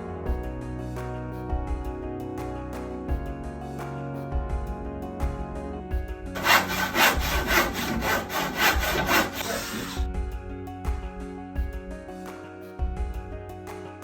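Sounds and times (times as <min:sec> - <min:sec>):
saw cutting: 0:06.4 - 0:10.1.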